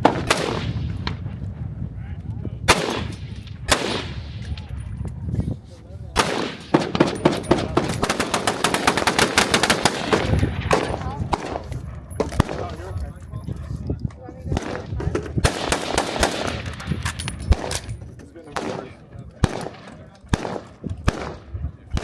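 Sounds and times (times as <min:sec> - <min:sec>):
gunshots: 0:00.0 - 0:01.2, 0:02.7 - 0:04.8, 0:06.2 - 0:12.8, 0:14.5 - 0:17.9, 0:18.5 - 0:22.0
rapid gunfire: 0:06.2 - 0:11.6, 0:14.6 - 0:16.8.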